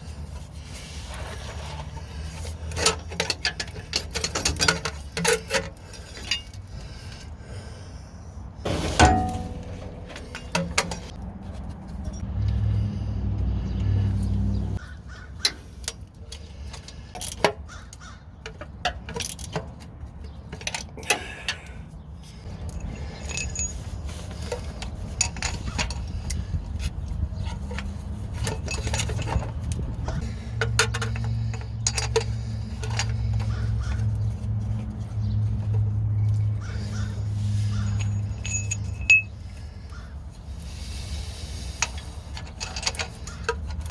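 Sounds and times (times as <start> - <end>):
hand tools clinking on metal: 2.4 - 6.7, 8.7 - 11.2, 22.4 - 34.2, 35.6 - 40.1
low steady rumble: 8.6 - 14.8
loud metallic clank: 8.7 - 11.1.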